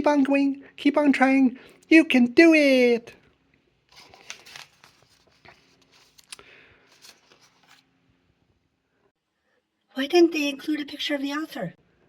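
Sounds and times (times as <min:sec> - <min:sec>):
paper pages rustling: 0:03.9 - 0:08.0.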